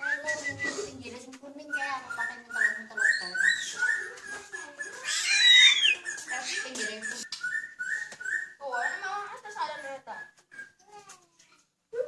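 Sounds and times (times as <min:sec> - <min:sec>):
pet bird chirping: 0:01.6 - 0:11.0.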